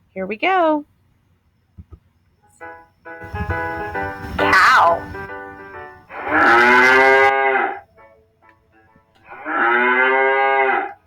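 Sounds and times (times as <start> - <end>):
cow mooing: 4.2 - 5.3, 6.1 - 7.8, 9.3 - 11.0.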